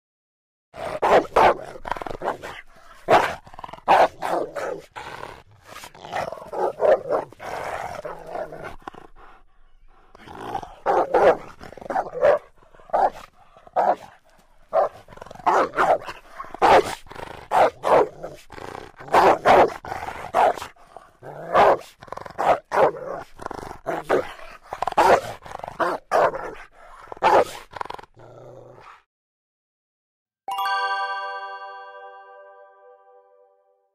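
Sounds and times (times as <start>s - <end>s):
dog growling: 0.8s - 29.0s
dog barking: 0.9s - 4.9s, 6.1s - 7.4s, 10.8s - 18.4s, 19.0s - 23.2s, 23.9s - 24.4s, 25.0s - 27.6s.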